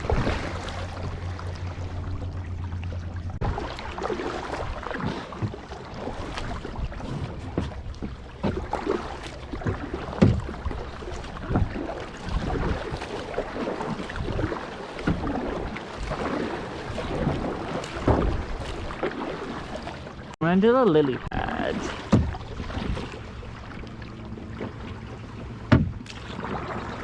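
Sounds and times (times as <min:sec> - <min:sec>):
paddle blades splashing: 0:00.0 - 0:27.0
knocks: 0:25.7 - 0:26.0.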